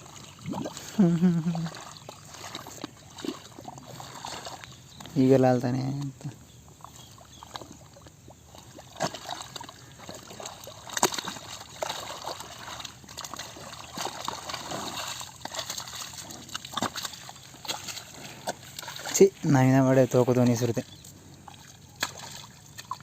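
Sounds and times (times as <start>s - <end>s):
grass torn and chewed: 1.7s - 5.2s, 6.0s - 19.8s.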